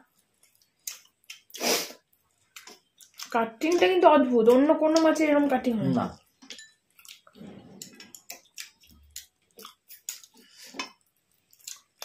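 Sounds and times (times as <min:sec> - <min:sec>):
utensils clinking on a plate: 0:06.4 - 0:06.8, 0:07.4 - 0:08.4.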